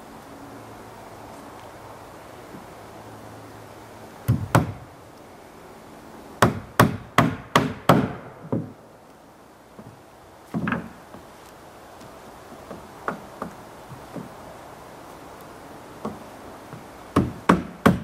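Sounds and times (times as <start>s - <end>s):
hammer striking wood: 4.3s - 4.8s, 6.4s - 8.8s, 17.1s - 18.0s.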